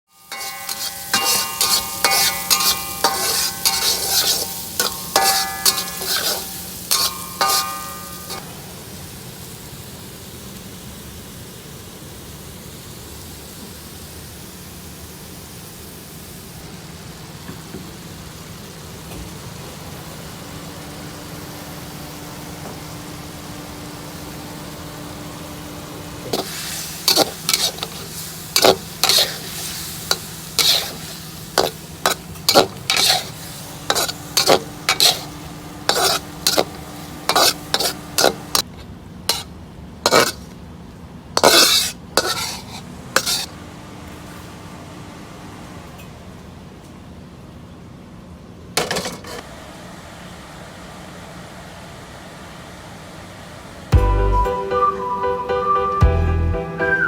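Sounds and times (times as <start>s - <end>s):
metal spatula clanging on pan: 0.1s - 8.5s, 26.2s - 38.7s, 39.3s - 39.5s, 40.1s - 40.4s, 41.4s - 43.5s
food sizzling: 0.1s - 45.9s.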